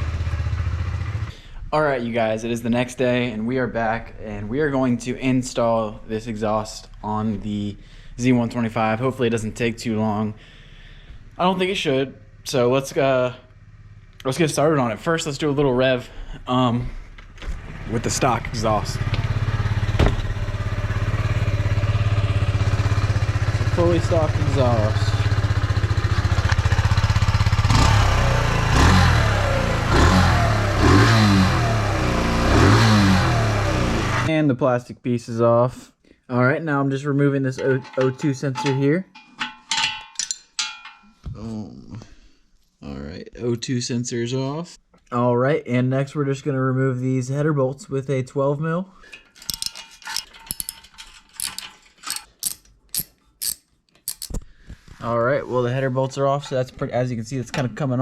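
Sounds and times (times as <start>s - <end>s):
motorcycle engine idling and revving: 0.0s - 1.4s, 11.2s - 15.9s, 17.0s - 34.3s
ratchet wrench clicking: 49.4s - 54.4s.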